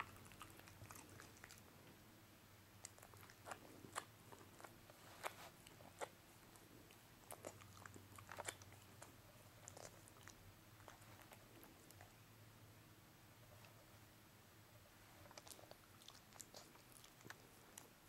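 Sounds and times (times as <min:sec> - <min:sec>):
dog crunching food: 0:00.0 - 0:01.7, 0:02.8 - 0:12.1, 0:15.2 - 0:17.9.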